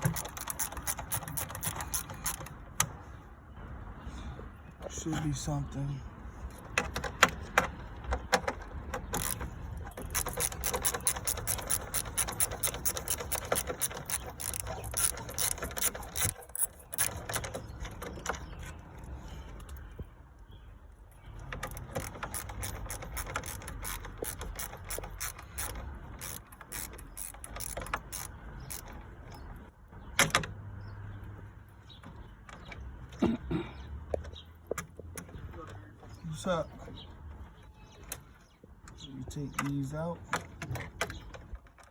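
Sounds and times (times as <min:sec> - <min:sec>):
ratchet wrench clicking: 0:00.0 - 0:02.5, 0:09.1 - 0:17.8, 0:21.6 - 0:28.9.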